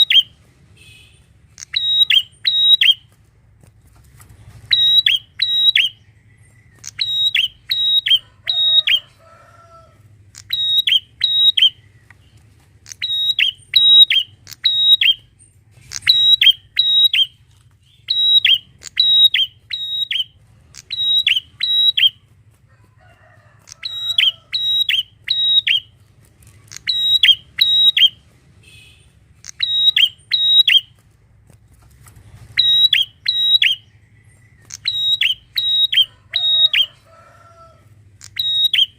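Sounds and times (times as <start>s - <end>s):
bird singing sharp clipped notes: 1.5s - 3.0s, 4.8s - 8.2s, 10.3s - 22.1s, 23.8s - 28.1s, 29.4s - 30.9s, 32.6s - 36.0s.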